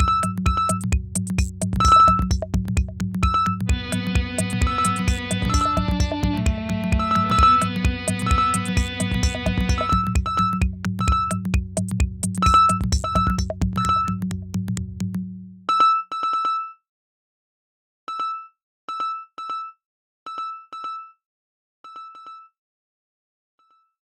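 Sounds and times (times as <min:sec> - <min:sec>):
techno music with heavy bass: 0:00.0 - 0:15.2
synthesizer blips: 0:01.7 - 0:02.4, 0:03.2 - 0:11.6, 0:12.4 - 0:14.3.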